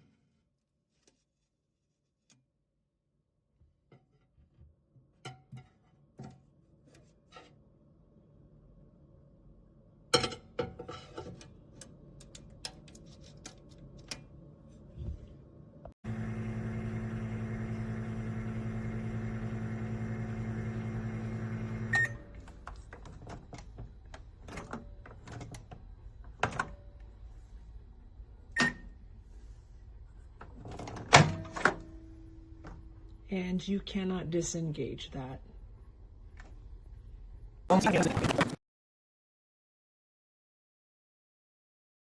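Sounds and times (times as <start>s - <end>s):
microwave oven humming: 16.1s - 22.5s.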